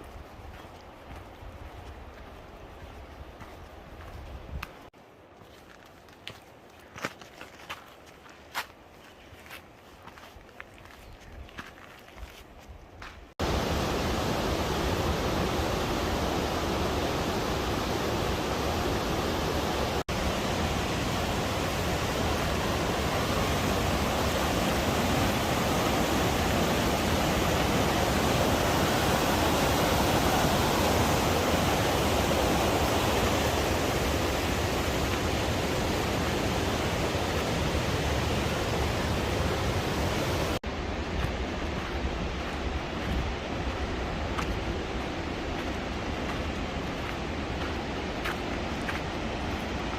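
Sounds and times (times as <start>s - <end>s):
whitewater rushing: 13.4s - 42.4s.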